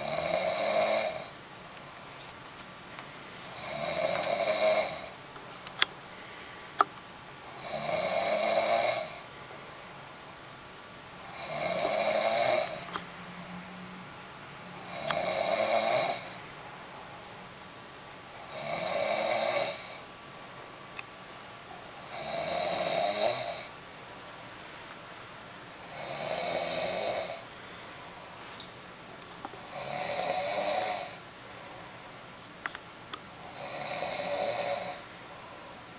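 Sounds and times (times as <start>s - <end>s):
loud snoring: 0.0s - 1.4s, 3.5s - 5.2s, 7.5s - 9.3s, 11.2s - 12.9s, 14.8s - 16.4s, 18.4s - 20.0s, 22.0s - 23.8s, 25.8s - 27.5s, 29.6s - 31.2s, 33.4s - 35.0s
quiet breathing: 2.9s - 5.2s, 6.0s - 7.6s, 8.3s - 10.1s, 25.8s - 28.6s, 29.6s - 32.2s.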